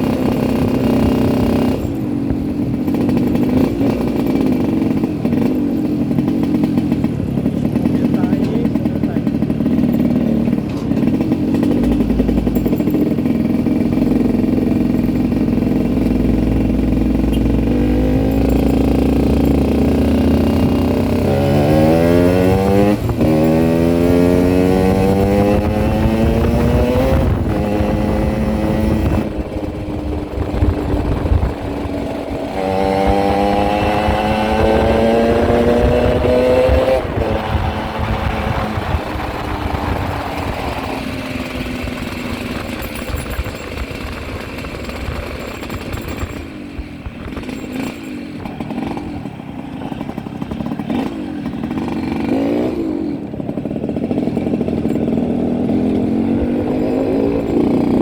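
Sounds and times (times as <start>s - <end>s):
motorcycle engine idling and revving: 0.0s - 58.0s.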